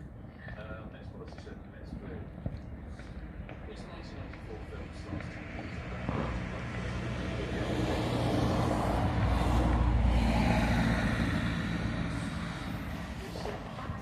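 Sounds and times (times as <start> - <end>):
vehicle passing by: 4.6 - 14.0.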